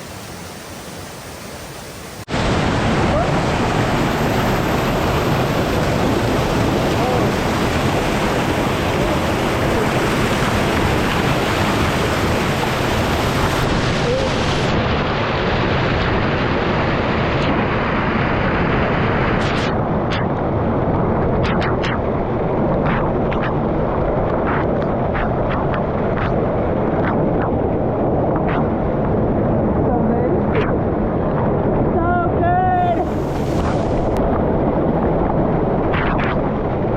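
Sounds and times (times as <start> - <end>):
river rushing: 0.0 - 19.7, 30.4 - 36.9
sharp splashy ticks: 19.4 - 20.4, 21.4 - 22.1, 22.8 - 27.6, 28.4 - 28.7, 35.2 - 36.6.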